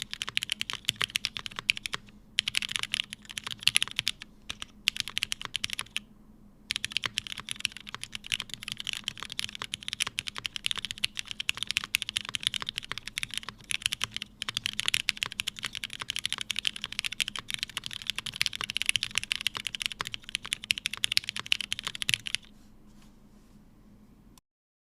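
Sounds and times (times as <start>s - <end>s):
mechanical keyboard typing: 0.0s - 6.0s, 6.7s - 22.5s.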